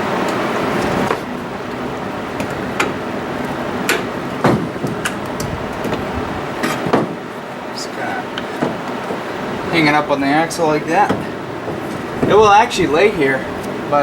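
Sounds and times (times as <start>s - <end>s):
steady background hiss: 0.0s - 14.0s.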